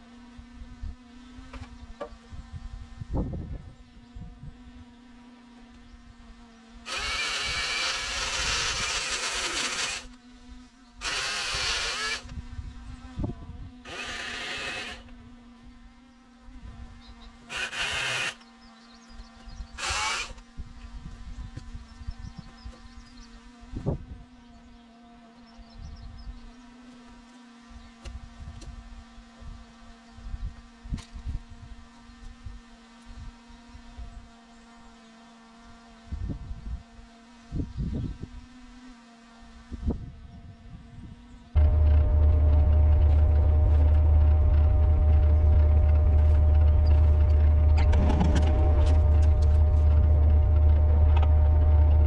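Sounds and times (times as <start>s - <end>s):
excavator engine droning: 41.6s - 52.0s.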